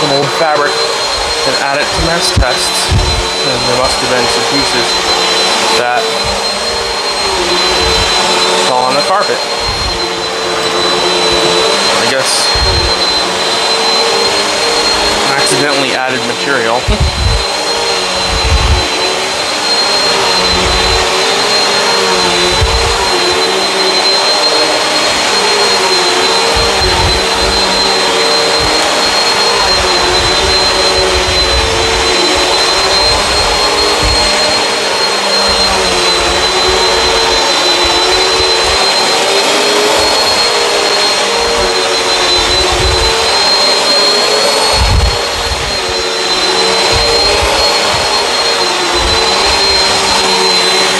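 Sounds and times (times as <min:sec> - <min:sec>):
vacuum cleaner running on carpet: 0:00.0 - 0:50.9.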